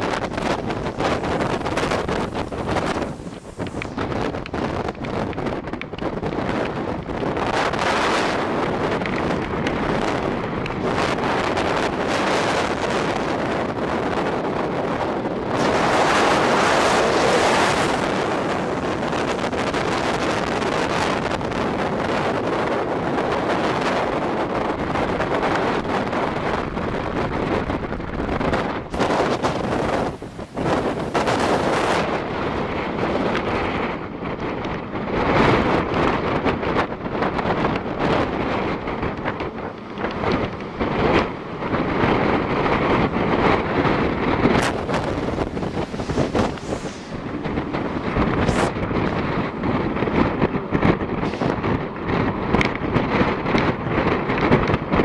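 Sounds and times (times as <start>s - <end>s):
surf on shore: 0.0s - 5.2s, 15.3s - 21.6s, 28.9s - 33.6s, 44.4s - 50.4s
wind buffeting microphone: 0.0s - 55.0s.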